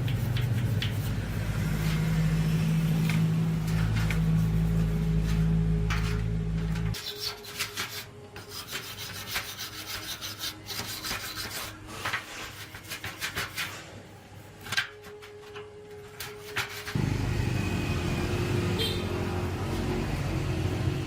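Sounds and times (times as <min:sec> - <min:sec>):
hand filing or sanding strokes: 0:00.0 - 0:03.0, 0:03.7 - 0:06.2, 0:06.9 - 0:14.6, 0:16.2 - 0:17.0
electric machine hum: 0:00.0 - 0:07.0, 0:17.0 - 0:21.0.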